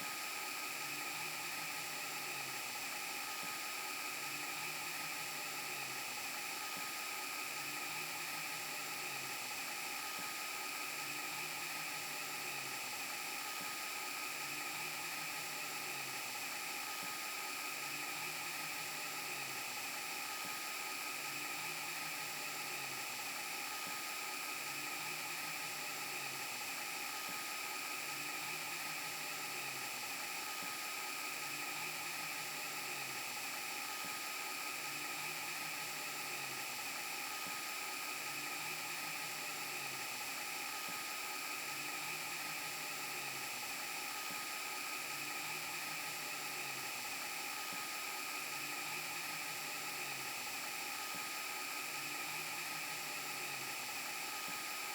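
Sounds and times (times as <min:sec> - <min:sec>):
static hiss: 0:00.0 - 0:54.9.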